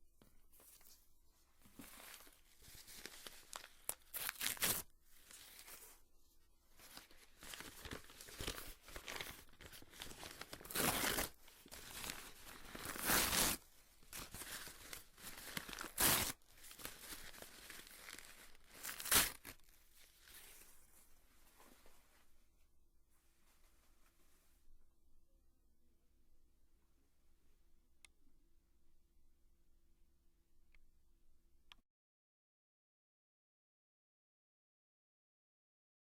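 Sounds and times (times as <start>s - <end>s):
paper rustling and crinkling: 1.6s - 6.0s, 6.7s - 22.3s
paper tearing: 10.0s - 13.6s, 14.2s - 19.6s.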